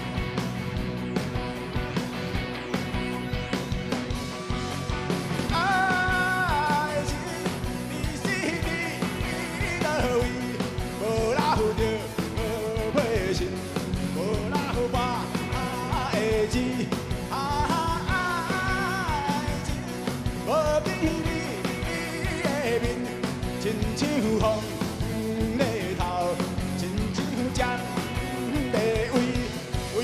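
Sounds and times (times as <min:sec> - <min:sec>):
gliding lead melody: 0:00.0 - 0:14.4
live rock band playing: 0:00.0 - 0:30.0.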